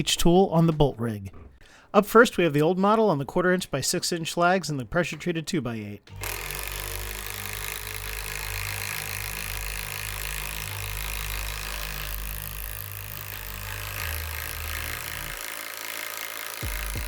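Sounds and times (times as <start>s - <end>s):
impact driver hammering: 6.1s - 17.0s.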